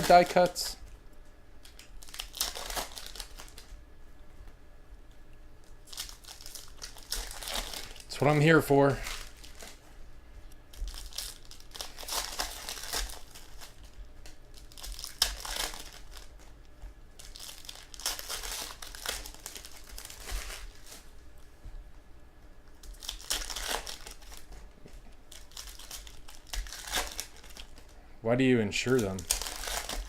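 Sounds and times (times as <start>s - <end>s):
cards rustling: 0.0s - 0.8s, 28.8s - 30.0s
card wrappers crinkling: 0.0s - 0.9s, 1.6s - 3.7s, 5.6s - 9.9s, 10.5s - 21.1s, 22.8s - 28.0s, 28.8s - 30.0s.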